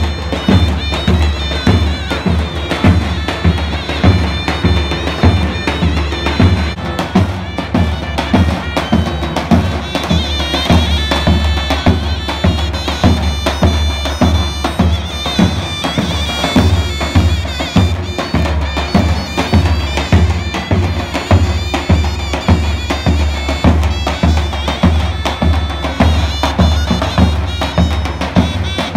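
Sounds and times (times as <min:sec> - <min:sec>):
reedy wind instrument folk tune: 0:00.0 - 0:28.9
steady drum beat: 0:00.0 - 0:28.9.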